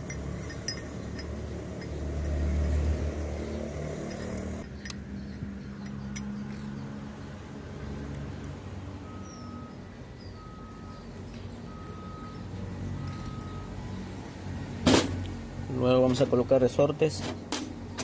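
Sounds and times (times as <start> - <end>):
small metal parts clinking: 0.0 - 8.6, 10.9 - 13.6
traffic rumble: 0.0 - 18.0.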